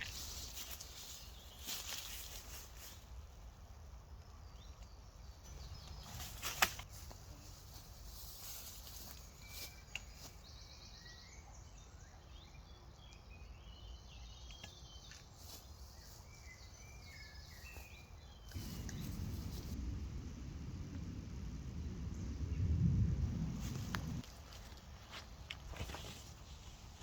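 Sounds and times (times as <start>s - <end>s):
small birds chirping: 0.0s - 24.2s
rustling of gear: 23.7s - 27.0s.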